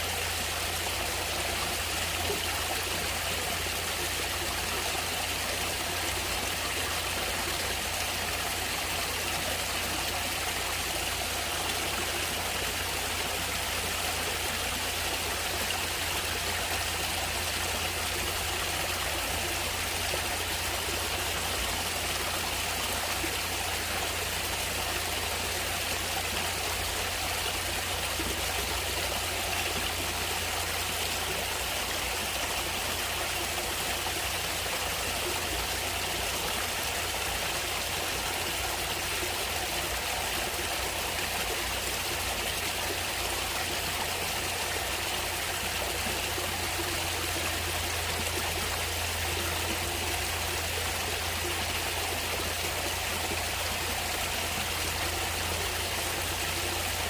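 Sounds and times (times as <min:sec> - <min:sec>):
flowing water rushing: 0:00.0 - 0:57.0.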